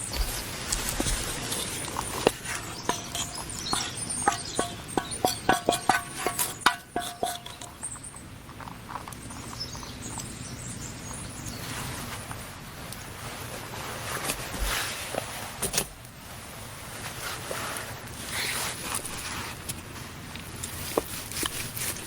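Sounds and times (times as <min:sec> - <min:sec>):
steady outdoor hiss: 0:00.0 - 0:22.0
hard objects knocking and clinking: 0:00.1 - 0:09.2.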